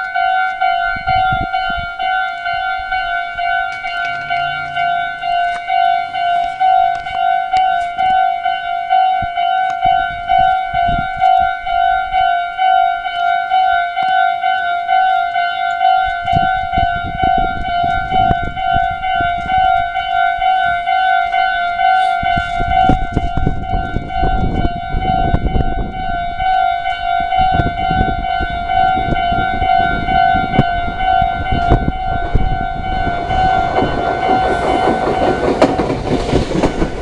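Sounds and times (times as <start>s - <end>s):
passing train rumble: 0.0s - 37.0s
railway crossing warning bell: 0.0s - 37.0s.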